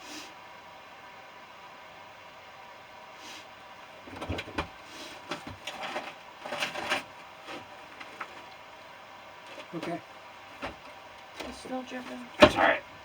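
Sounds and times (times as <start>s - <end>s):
dull thuds: 10.6s - 13.0s.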